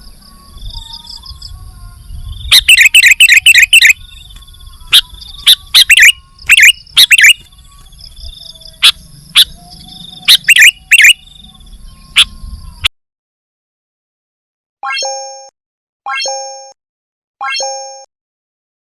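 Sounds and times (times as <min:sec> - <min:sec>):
faint continuous trill: 0:00.0 - 0:12.9
bulbul calling: 0:02.3 - 0:12.9.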